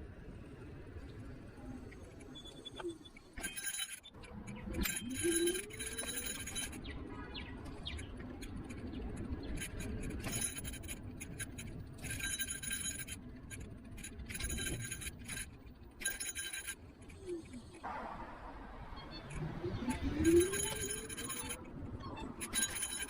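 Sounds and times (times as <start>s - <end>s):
rasping scraping and rattling: 2.0s - 17.9s.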